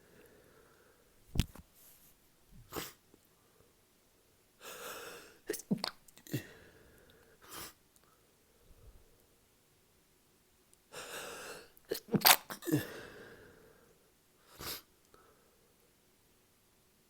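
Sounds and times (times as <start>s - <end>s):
person sneezing: 11.9s - 13.2s.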